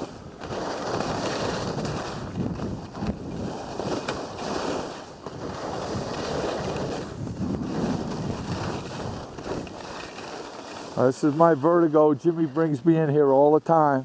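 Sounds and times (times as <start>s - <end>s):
wind buffeting microphone: 0.0s - 4.5s, 5.2s - 10.0s
skis sliding through snow: 0.0s - 14.0s.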